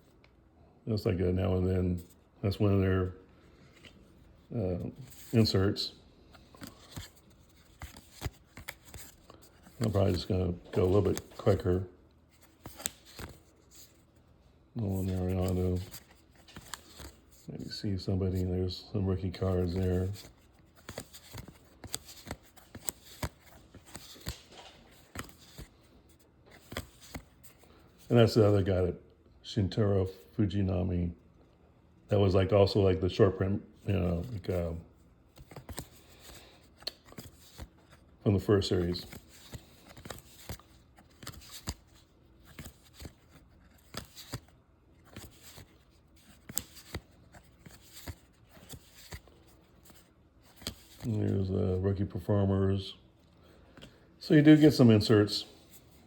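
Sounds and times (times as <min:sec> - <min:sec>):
cards sliding and snapping: 0:03.6 - 0:14.1, 0:15.0 - 0:17.5, 0:19.4 - 0:28.0, 0:35.3 - 0:51.2.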